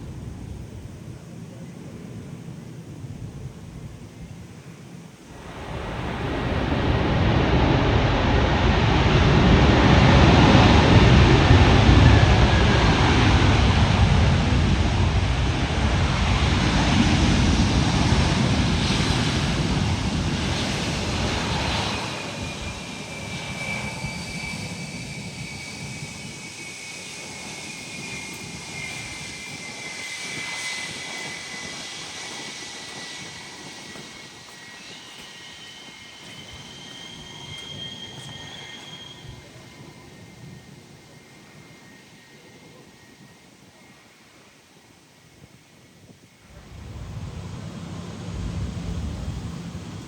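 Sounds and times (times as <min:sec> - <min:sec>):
high jet engine whine: 0:00.0 - 0:50.0
jet engines rushing noise: 0:00.0 - 0:50.0.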